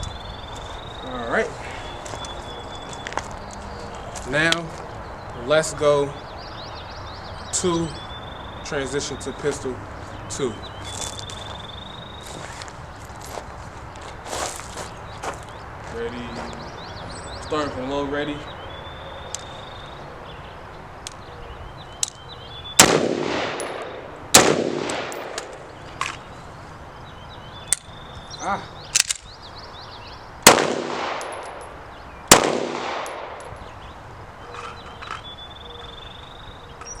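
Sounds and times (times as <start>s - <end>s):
pistol shots: 22.8s - 25.7s, 30.4s - 31.7s, 32.3s - 33.5s
rifle shots echoing: 22.8s - 25.7s, 30.4s - 33.6s.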